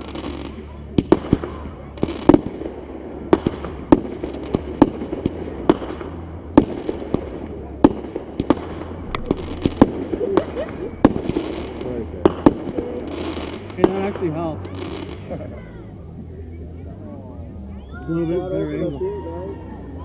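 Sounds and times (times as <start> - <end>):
distant fireworks bangs: 1.0 - 14.2
steady low hum: 8.6 - 13.8.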